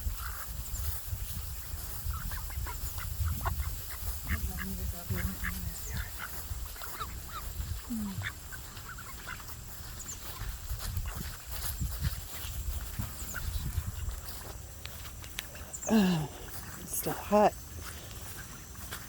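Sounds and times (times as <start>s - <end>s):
ducks quacking: 1.6s - 14.2s.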